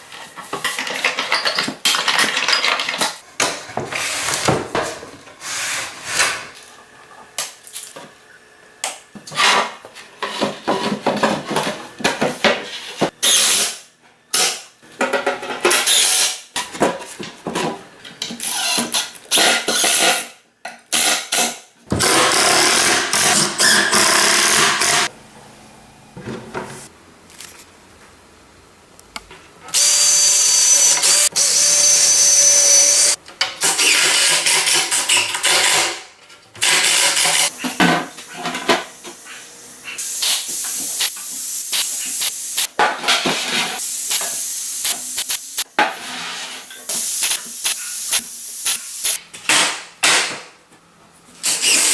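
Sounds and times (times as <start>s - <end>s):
wooden parts and tools clattering: 0.3s - 5.2s
power tool whining: 21.9s - 26.9s, 29.8s - 33.2s.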